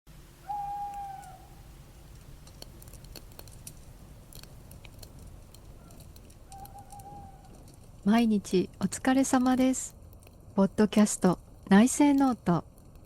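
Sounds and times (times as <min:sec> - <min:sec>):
campfire crackling: 0:00.1 - 0:13.0
bird call: 0:00.4 - 0:01.6, 0:05.8 - 0:07.6.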